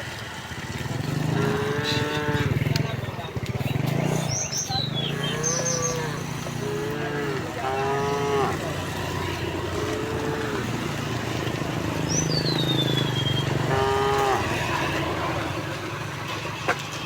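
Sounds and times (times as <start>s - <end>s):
cows mooing: 1.0s - 3.0s, 4.9s - 15.5s.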